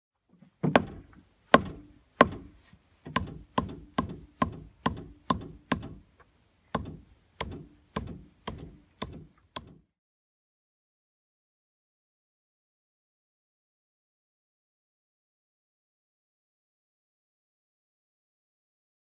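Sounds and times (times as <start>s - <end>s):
tool striking wood: 0.6s - 6.1s, 6.7s - 9.9s.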